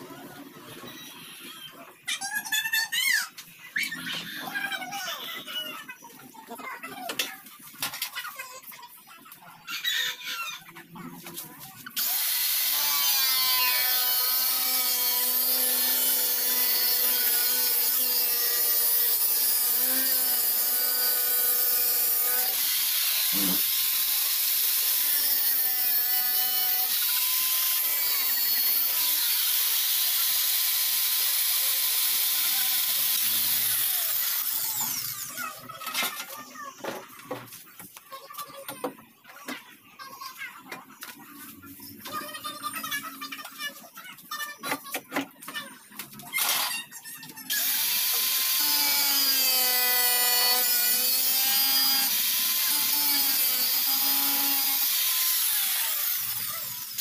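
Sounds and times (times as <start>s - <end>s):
power tool whining on sheet metal: 12.0s - 35.2s, 47.5s - 57.0s.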